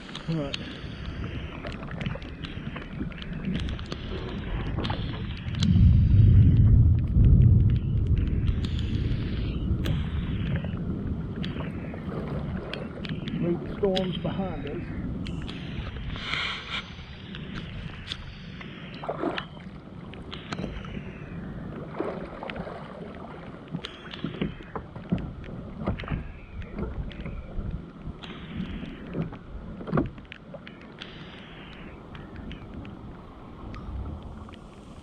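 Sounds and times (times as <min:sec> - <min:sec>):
water splashing against kayak hull: 0:00.0 - 0:35.0.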